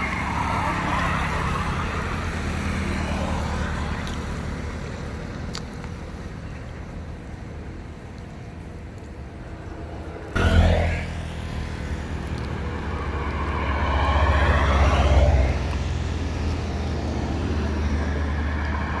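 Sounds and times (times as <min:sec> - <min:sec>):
vehicle engine humming: 0:00.0 - 0:19.0
vehicle passing close by: 0:10.3 - 0:19.0.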